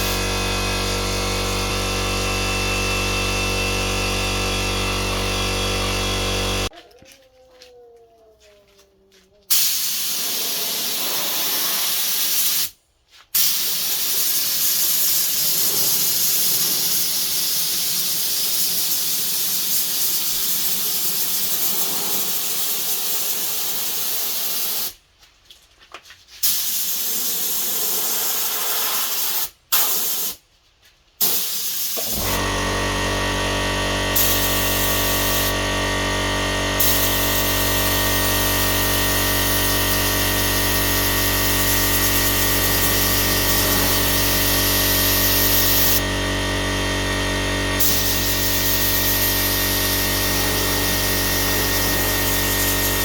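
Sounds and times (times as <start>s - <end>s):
aerosol spray hissing: 13.4s - 25.0s, 26.4s - 30.4s, 36.8s - 46.0s, 47.8s - 53.0s.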